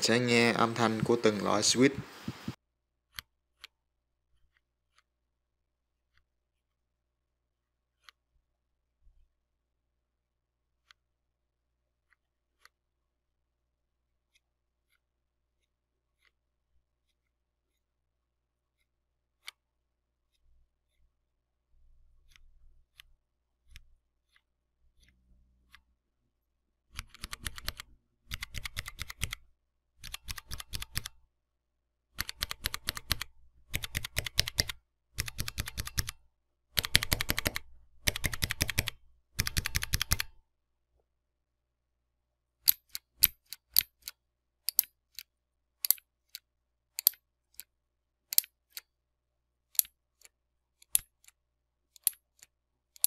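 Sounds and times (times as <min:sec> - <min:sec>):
mechanical keyboard clattering: 0:27.0 - 0:29.4, 0:32.2 - 0:36.1, 0:36.8 - 0:40.3.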